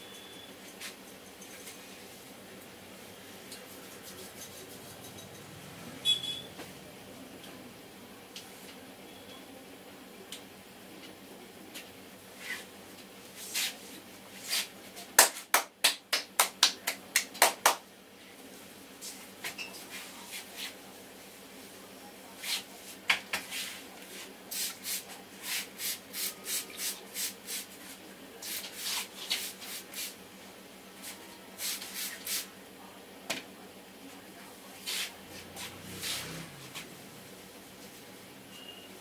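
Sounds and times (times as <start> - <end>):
hands rubbing and patting hair: 3.6 - 5.1, 22.4 - 30.2, 31.0 - 32.5, 34.8 - 36.9.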